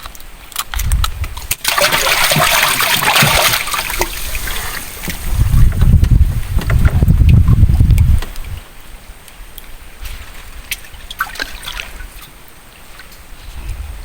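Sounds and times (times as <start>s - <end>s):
water splashing: 0.0s - 8.6s, 10.0s - 13.2s
low rumbling: 4.1s - 8.6s.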